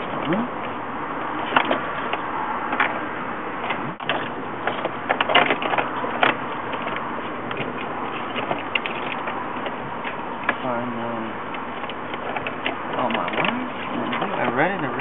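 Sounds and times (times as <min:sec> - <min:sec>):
plastic parts clicking and knocking: 0:11.8 - 0:14.6.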